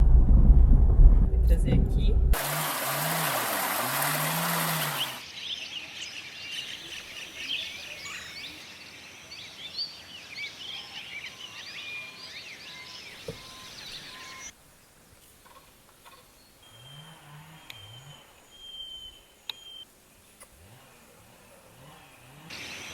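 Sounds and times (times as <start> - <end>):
many birds chirping: 5.0 - 14.5.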